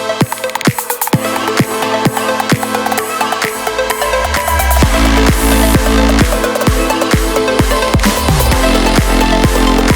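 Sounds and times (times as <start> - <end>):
electronic dance music: 0.0 - 9.9
synth melody: 0.0 - 9.9
steady kick drum: 4.7 - 9.9.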